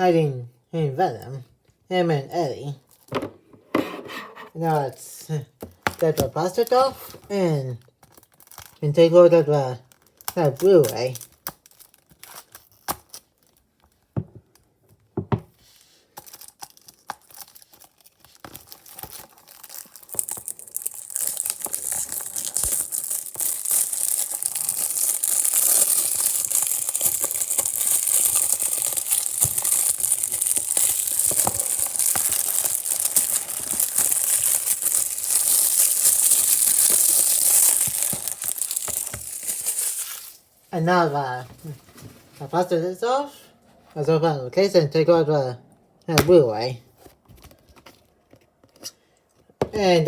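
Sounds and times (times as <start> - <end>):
shrink wrap tearing and crinkling: 7.8 - 9.1, 9.7 - 14.1, 16.0 - 40.7.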